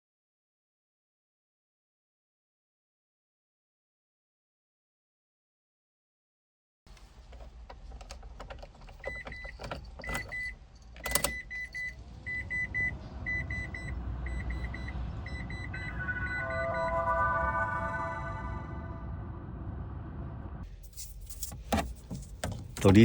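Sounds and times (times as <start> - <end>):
irregular clicking and clattering: 6.9 - 11.4, 20.9 - 23.0
high electronic beeps: 11.4 - 19.6
low rumble: 11.9 - 20.9
music tones: 13.5 - 20.6.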